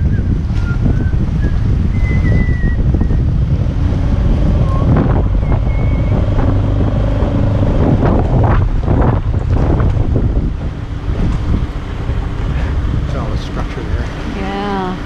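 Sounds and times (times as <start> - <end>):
faint thin whistling: 0.0 - 3.3, 4.6 - 6.4
wind buffeting microphone: 0.0 - 15.0.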